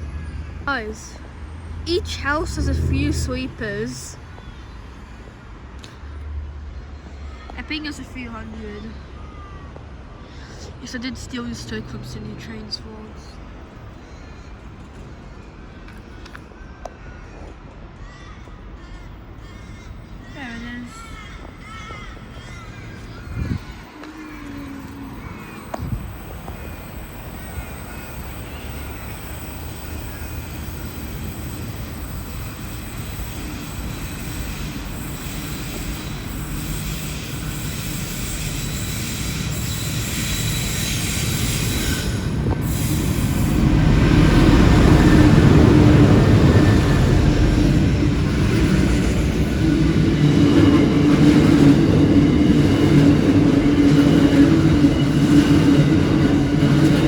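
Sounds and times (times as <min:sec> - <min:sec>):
freight train passing: 0:00.0 - 0:09.2, 0:09.8 - 0:16.9, 0:17.8 - 0:57.0
high wheel squeal: 0:18.8 - 0:57.0.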